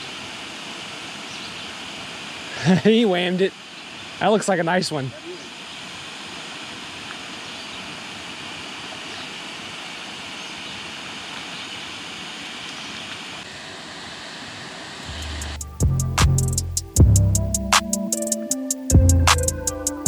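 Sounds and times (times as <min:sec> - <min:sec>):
water rushing through spillway: 0:00.0 - 0:15.2.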